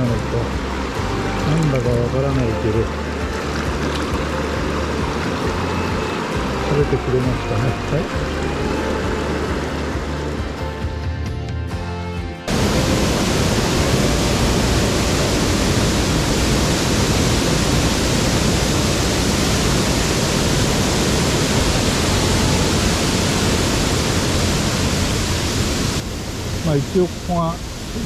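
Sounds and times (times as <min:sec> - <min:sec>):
background music: 0:00.0 - 0:25.5.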